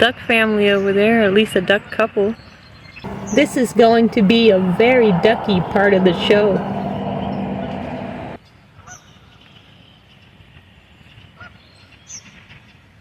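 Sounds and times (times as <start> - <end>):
loud steady noise: 3.0 - 8.4
waterfowl calls: 3.1 - 7.7.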